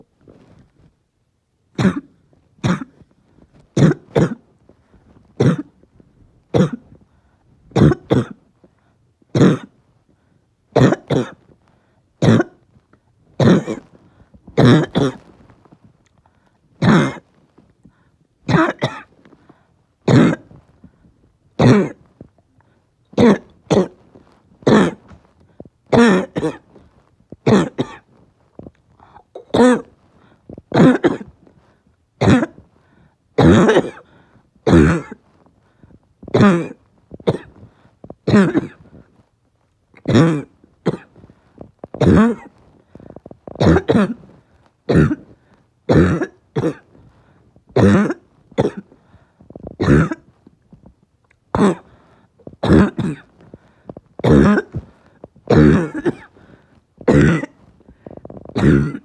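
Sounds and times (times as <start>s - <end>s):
person coughing harshly: 1.8s - 3.0s, 3.8s - 4.5s, 5.4s - 5.8s, 6.5s - 7.0s, 7.8s - 8.4s, 9.4s - 9.8s, 10.8s - 11.4s, 12.2s - 12.6s, 13.4s - 13.9s, 14.6s - 15.2s, 16.8s - 17.2s, 18.5s - 19.1s, 20.1s - 20.6s, 21.6s - 22.1s, 23.2s - 24.0s, 24.6s - 25.2s, 25.9s - 26.7s, 27.4s - 28.1s, 29.0s - 29.9s, 30.7s - 31.4s, 32.2s - 32.6s, 33.4s - 35.2s, 36.3s - 37.6s, 38.3s - 38.8s, 40.0s - 41.2s, 42.0s - 45.3s, 45.9s - 46.9s, 47.8s - 49.0s, 49.8s - 50.3s, 51.6s - 51.9s, 52.6s - 53.3s, 54.2s - 54.9s, 55.5s - 59.0s.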